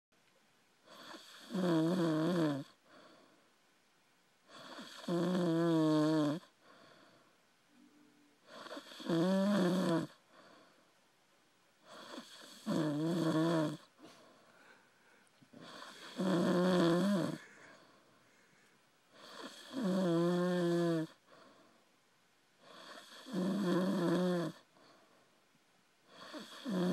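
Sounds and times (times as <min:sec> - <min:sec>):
person snoring heavily: 0:00.9 - 0:02.8, 0:04.5 - 0:06.5, 0:08.5 - 0:10.2, 0:11.9 - 0:13.9, 0:15.6 - 0:17.9, 0:19.2 - 0:21.2, 0:22.6 - 0:24.6, 0:26.1 - 0:26.9.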